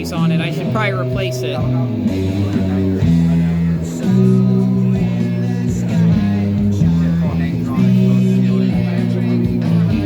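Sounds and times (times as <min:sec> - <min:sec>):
guitar background music: 0:00.0 - 0:10.0.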